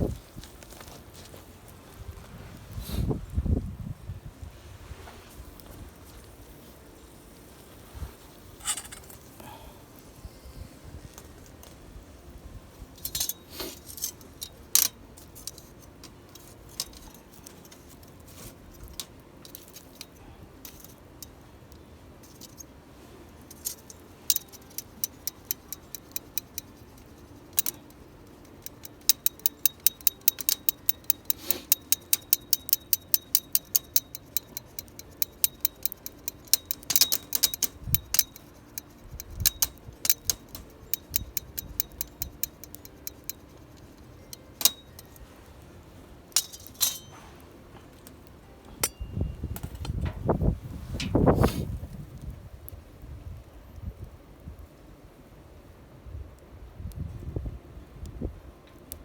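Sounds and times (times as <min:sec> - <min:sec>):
wood fire crackling and popping: 0:23.4 - 0:48.9.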